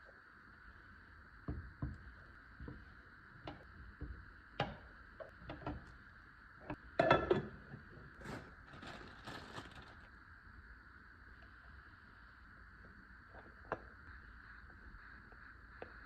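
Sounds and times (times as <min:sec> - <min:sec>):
rustling: 0:08.1 - 0:10.1.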